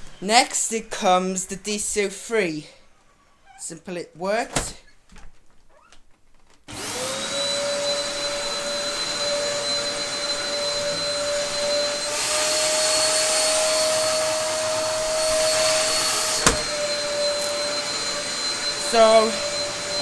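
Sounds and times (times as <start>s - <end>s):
vacuum cleaner motor whine: 6.7s - 20.0s.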